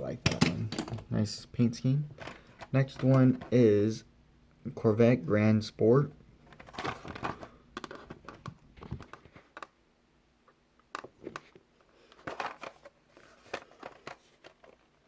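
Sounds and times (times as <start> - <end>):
plastic packaging clicks and crinkles: 6.5 - 9.8, 10.8 - 15.0.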